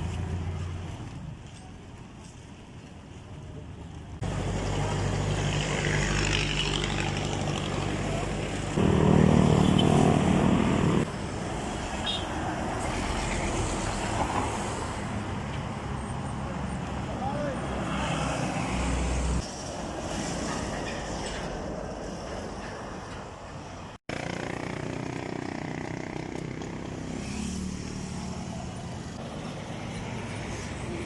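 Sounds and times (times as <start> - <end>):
vehicle engine humming: 0.0 - 17.9.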